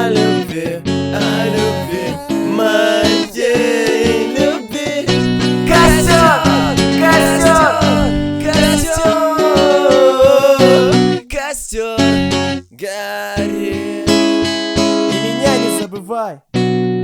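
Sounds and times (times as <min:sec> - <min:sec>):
guitar-backed song: 0:00.0 - 0:12.7, 0:13.3 - 0:17.0.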